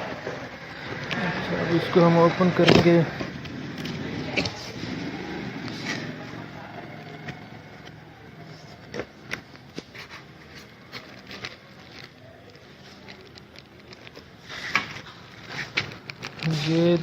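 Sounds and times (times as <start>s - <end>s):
packaging rustling: 5.6s - 17.0s.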